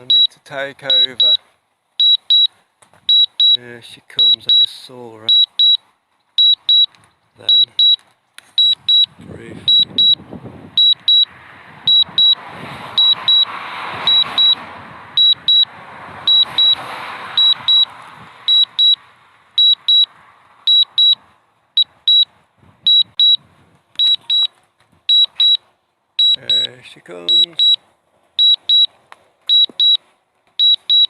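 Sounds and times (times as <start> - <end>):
remote controller double beeps: 0.0 - 0.3, 0.9 - 1.4, 2.0 - 2.5, 3.1 - 3.6, 4.2 - 4.7, 5.3 - 5.8, 6.4 - 6.9, 7.5 - 8.0, 8.6 - 9.1, 9.7 - 10.2, 10.8 - 11.3, 11.9 - 12.4, 13.0 - 13.5, 14.1 - 14.6, 15.2 - 15.7, 16.3 - 16.8, 17.4 - 17.9, 18.5 - 19.0, 19.6 - 20.1, 20.7 - 21.2, 21.8 - 22.3, 22.9 - 23.4, 24.0 - 24.5, 25.1 - 25.6, 26.2 - 26.7, 27.3 - 27.8, 28.4 - 28.9, 29.5 - 30.0, 30.6 - 31.0
wind rumbling on microphone: 8.6 - 18.9, 21.1 - 25.2.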